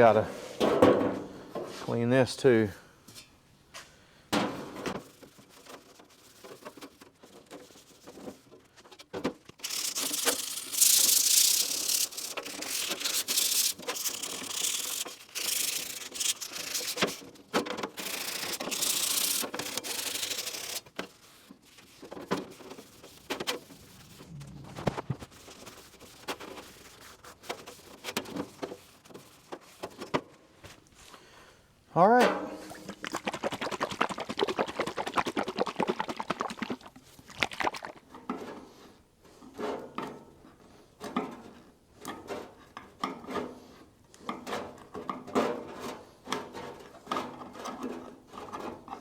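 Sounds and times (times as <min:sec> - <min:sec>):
rag rubbing on metal: 0:09.6 - 0:17.3, 0:17.9 - 0:20.9, 0:22.5 - 0:28.0.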